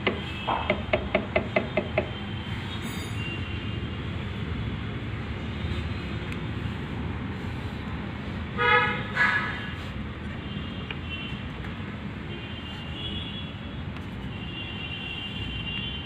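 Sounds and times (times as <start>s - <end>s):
vehicle horn toots: 8.6s - 9.7s.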